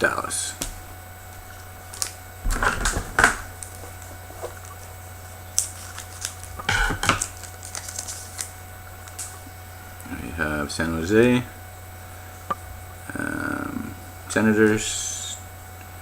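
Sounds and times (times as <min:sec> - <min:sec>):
cards flicking and rustling: 0:01.5 - 0:09.5.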